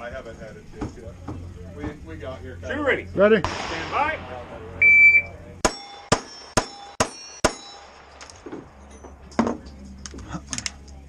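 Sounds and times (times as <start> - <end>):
pistol shots: 3.4 - 4.4, 5.6 - 8.4
steel target plate ringing: 3.8 - 8.2.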